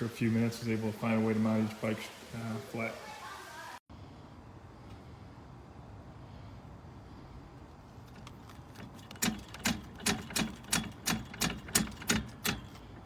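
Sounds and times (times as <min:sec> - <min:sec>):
bike carrier rattling: 0:08.0 - 0:13.0.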